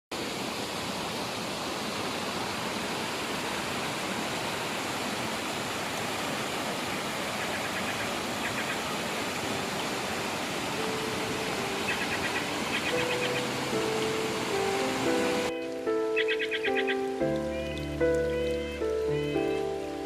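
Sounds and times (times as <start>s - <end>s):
stream water rushing: 0.1s - 20.0s.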